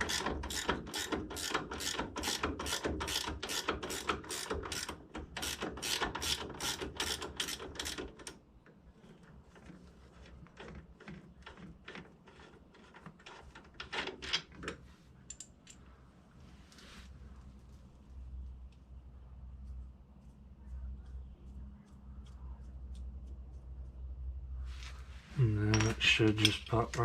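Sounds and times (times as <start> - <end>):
light metal clicks and taps: 15.2 - 15.9.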